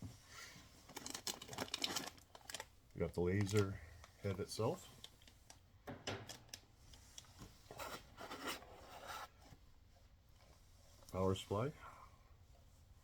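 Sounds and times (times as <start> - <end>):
packaging rubbing and scraping: 0.9 - 2.6.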